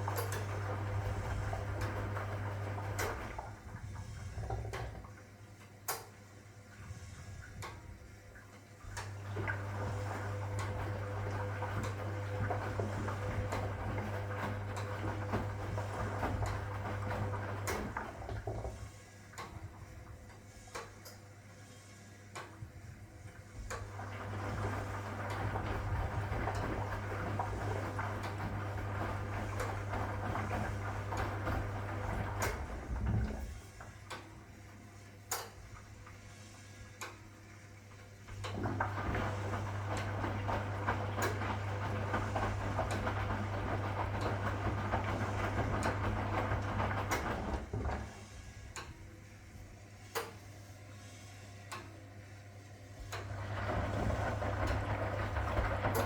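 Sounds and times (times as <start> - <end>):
washing machine motor humming: 0.0 - 21.5, 22.1 - 56.0.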